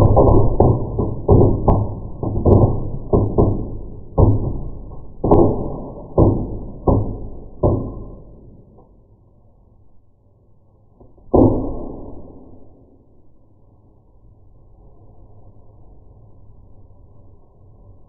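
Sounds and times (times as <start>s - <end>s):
firework popping: 0.0s - 8.7s.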